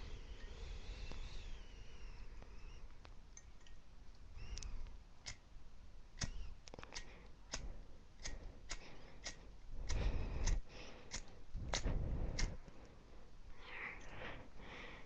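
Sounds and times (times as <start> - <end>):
lighter wheel rasping: 4.4 - 5.4, 6.2 - 12.6.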